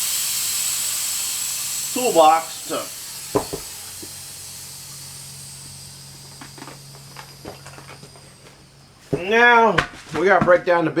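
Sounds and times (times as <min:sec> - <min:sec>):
low hum: 0:00.0 - 0:09.3
faint hiss: 0:00.0 - 0:09.6
wheel thumping on toolbox: 0:09.0 - 0:10.8.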